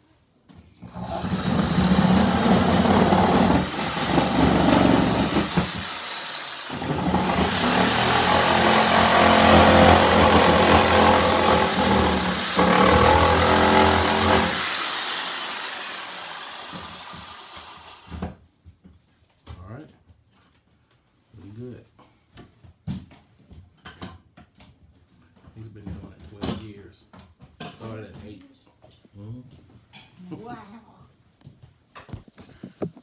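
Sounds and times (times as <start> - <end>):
loud motor running: 1.1 - 18.0.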